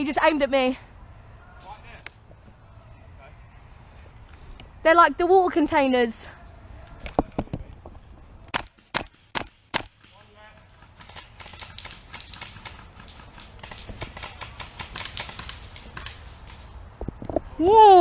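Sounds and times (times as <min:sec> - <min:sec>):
sharp airsoft gunshots: 0:08.5 - 0:16.2
rapid airsoft fire clicks: 0:08.5 - 0:16.7.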